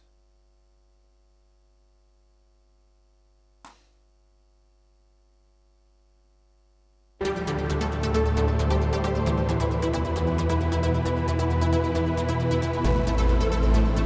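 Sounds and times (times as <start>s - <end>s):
faint mains hum: 0.0s - 7.2s
electronic trance music: 7.2s - 14.0s.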